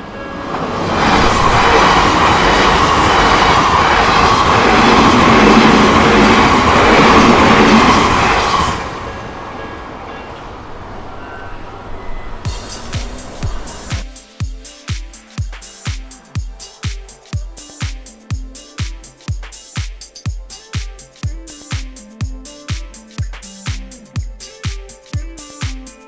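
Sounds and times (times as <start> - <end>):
train wheels clattering: 0.5 - 10.3, 12.5 - 25.9
music: 12.5 - 26.0.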